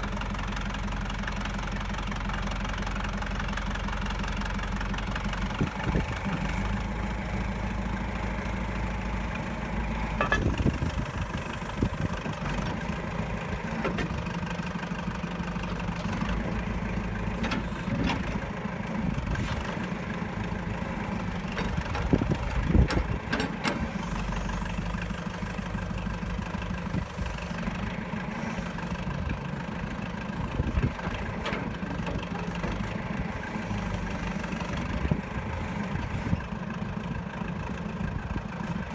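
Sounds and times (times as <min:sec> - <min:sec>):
backhoe engine running: 0:00.0 - 0:38.9.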